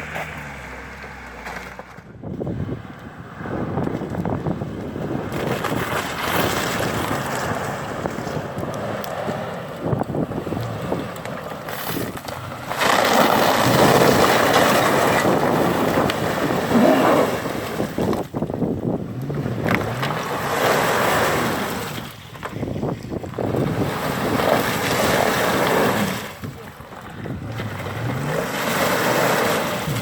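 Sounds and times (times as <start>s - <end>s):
suv engine working hard: 0.0s - 30.0s
churning and splashing water: 10.2s - 30.0s.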